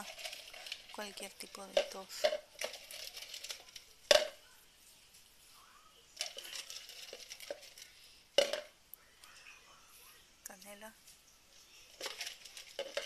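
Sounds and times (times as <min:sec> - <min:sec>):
dishes clinking: 0:00.0 - 0:04.4, 0:11.9 - 0:13.0
light tapping and scraping: 0:00.0 - 0:05.3, 0:06.2 - 0:09.4, 0:11.0 - 0:13.0.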